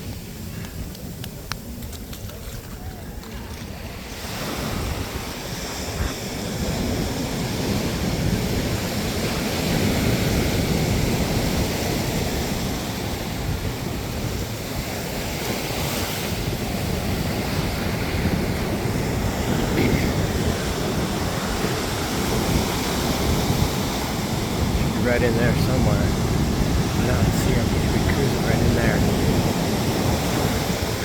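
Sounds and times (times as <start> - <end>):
ocean surf breaking: 0.0 - 31.0
wind buffeting microphone: 0.0 - 31.0.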